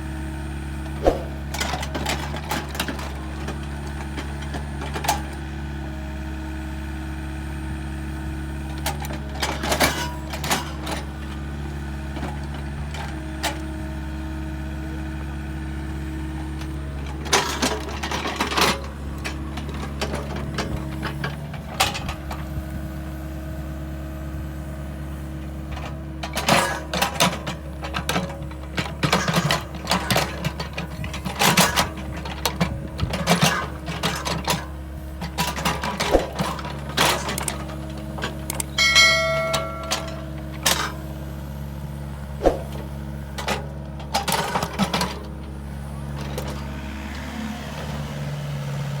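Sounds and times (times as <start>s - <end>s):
excavator engine running: 0.0s - 49.0s
bucket and arm clanking: 25.8s - 41.3s.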